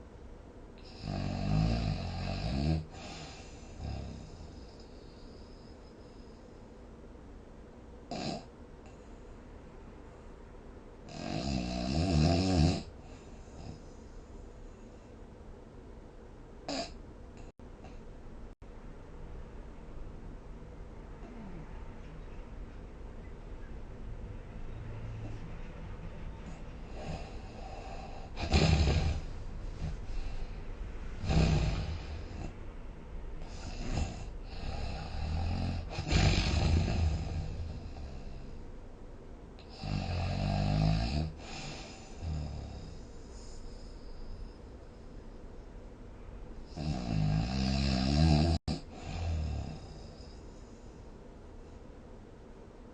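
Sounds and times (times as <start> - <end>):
person snoring: 0.8 - 5.8, 11.1 - 13.9, 16.7 - 17.5, 26.5 - 30.6, 31.2 - 32.5, 33.4 - 38.6, 39.6 - 44.6, 46.7 - 50.7
soft breaths: 2.9 - 7.3, 8.8 - 10.8, 12.9 - 15.6, 21.0 - 23.0, 24.4 - 39.9, 41.3 - 46.8, 48.6 - 52.9
short snort: 16.7 - 17.5, 27.0 - 30.4, 33.5 - 37.6.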